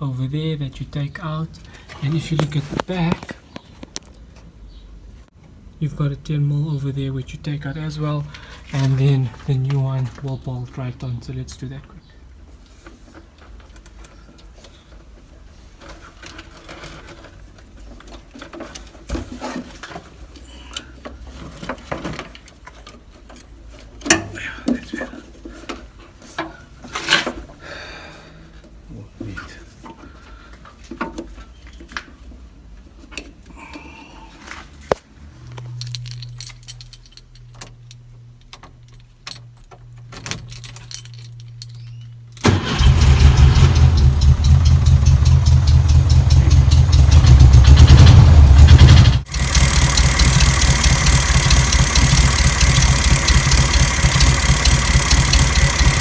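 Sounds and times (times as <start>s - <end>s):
car engine running: 42.5s - 56.0s.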